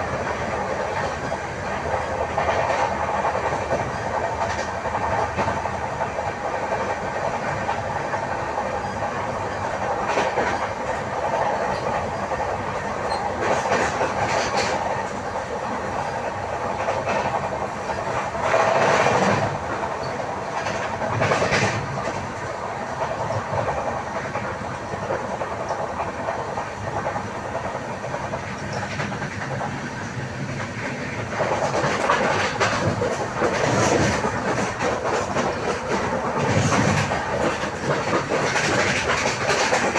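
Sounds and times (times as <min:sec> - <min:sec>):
train wheels clattering over rail joints: 0:00.0 - 0:39.9
flat wheel pounding the rail: 0:28.1 - 0:39.9.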